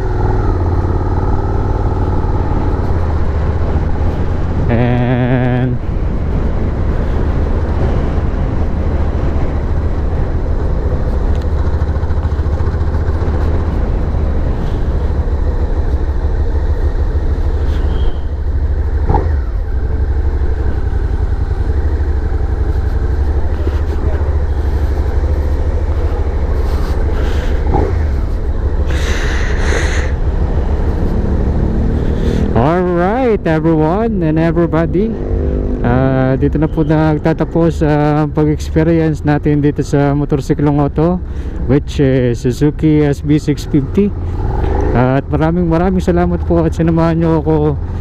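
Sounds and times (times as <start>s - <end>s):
motorcycle engine rumbling: 0.0s - 48.0s.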